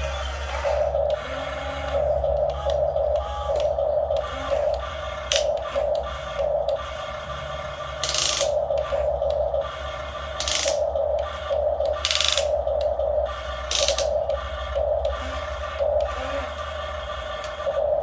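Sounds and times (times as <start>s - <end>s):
model excavator motors whirring: 0.0s - 18.0s.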